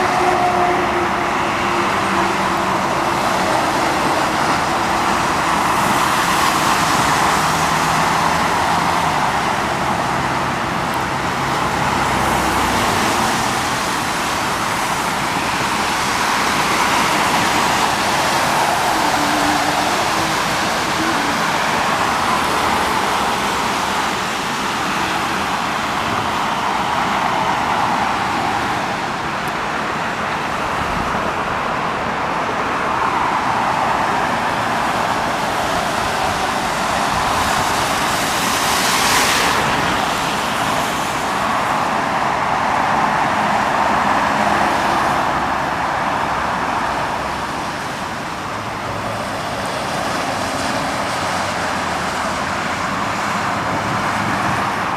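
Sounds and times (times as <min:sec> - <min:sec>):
vehicle passing loudly: 0:00.0 - 0:29.0
road traffic hiss: 0:00.0 - 0:54.9.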